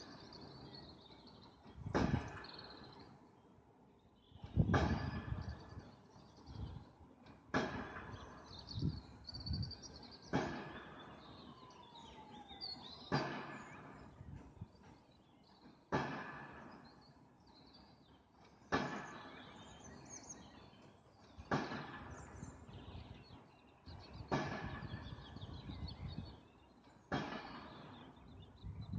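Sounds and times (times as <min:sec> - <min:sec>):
heavy echoing thump: 0:01.8 - 0:02.6.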